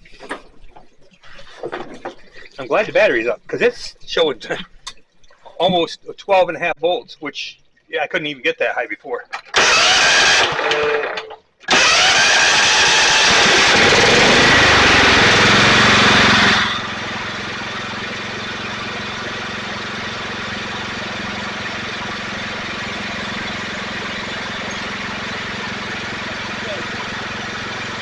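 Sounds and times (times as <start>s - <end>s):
lawn tractor engine running: 9.4s - 28.0s.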